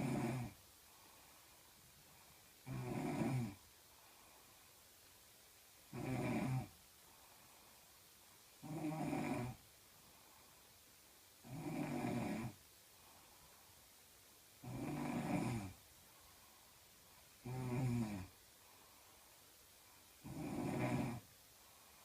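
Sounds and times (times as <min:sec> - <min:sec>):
woman snoring: 0:00.0 - 0:00.6, 0:02.6 - 0:03.6, 0:05.9 - 0:06.7, 0:08.6 - 0:09.6, 0:11.4 - 0:12.6, 0:14.6 - 0:15.8, 0:17.4 - 0:18.4, 0:20.2 - 0:21.3
quiet breathing: 0:00.0 - 0:22.0.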